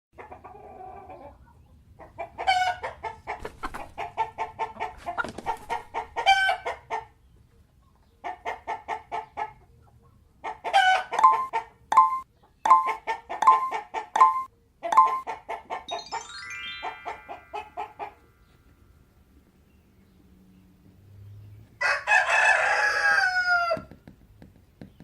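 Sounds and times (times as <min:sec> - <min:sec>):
chicken squawk: 0:00.2 - 0:07.1, 0:10.4 - 0:11.7
chicken clucking: 0:00.2 - 0:15.9, 0:16.9 - 0:18.8.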